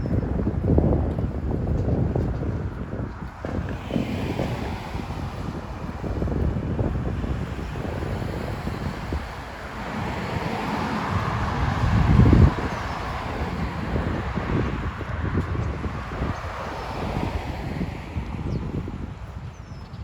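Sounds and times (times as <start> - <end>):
outdoor rushing noise: 0.0 - 20.0
wind buffeting microphone: 0.0 - 20.0.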